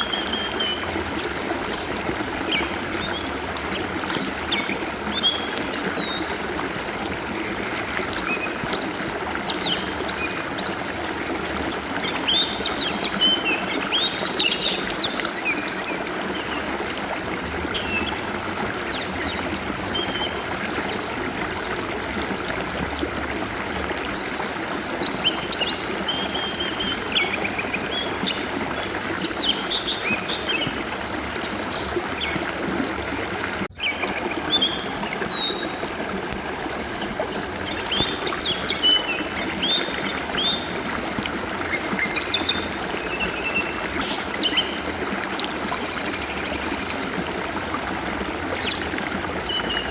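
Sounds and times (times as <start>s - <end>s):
bird singing whistles and chirps: 0.0s - 6.3s
stream water flowing: 0.0s - 49.9s.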